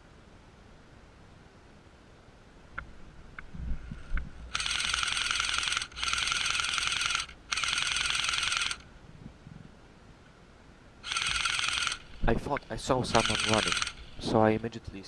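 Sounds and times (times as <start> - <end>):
airsoft gun firing full auto: 4.6 - 8.8, 11.0 - 12.2, 13.1 - 14.2.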